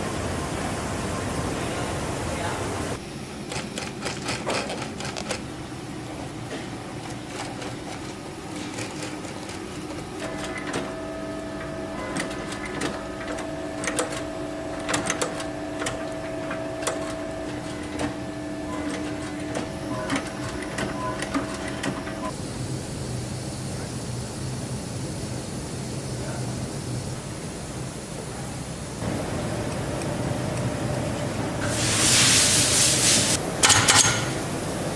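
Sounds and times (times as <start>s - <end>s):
steady hiss: 0.0s - 3.0s, 22.3s - 34.9s
workshop machine whining: 5.3s - 34.9s.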